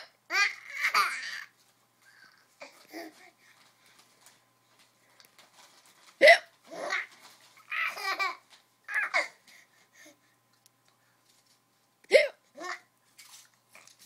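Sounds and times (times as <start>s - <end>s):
baby laughing: 0.3s - 1.5s, 6.7s - 9.4s
person hiccuping: 6.2s - 6.5s.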